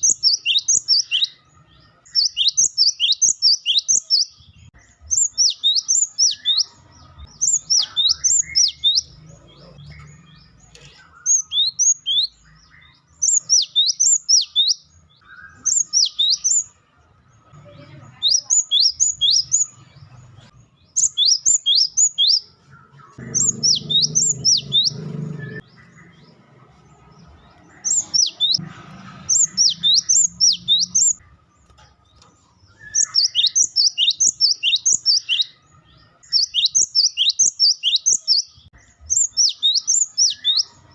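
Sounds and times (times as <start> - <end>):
bird giving high rapid calls: 23.2 - 25.6, 29.3 - 31.2.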